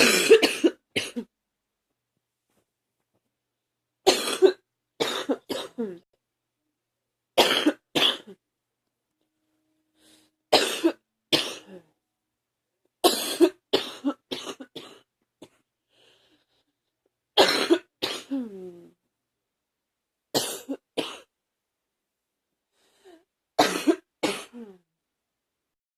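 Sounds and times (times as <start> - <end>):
person coughing: 0.0 - 1.3, 4.1 - 6.0, 7.4 - 8.4, 10.5 - 11.8, 13.0 - 15.6, 17.4 - 18.6, 23.6 - 24.8.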